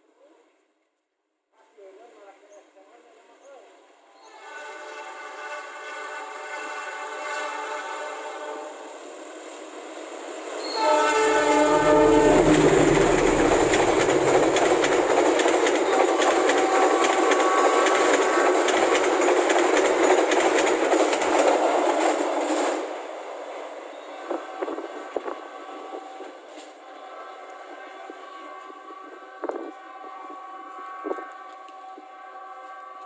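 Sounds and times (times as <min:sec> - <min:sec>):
train horn: 0:04.2 - 0:09.0, 0:10.6 - 0:19.0, 0:23.9 - 0:33.0
train wheels clattering on rails: 0:11.5 - 0:22.9.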